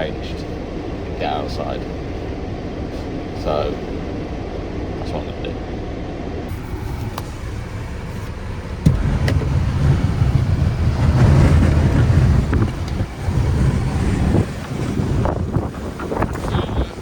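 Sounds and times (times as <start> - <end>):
wind buffeting microphone: 6.6 - 17.0.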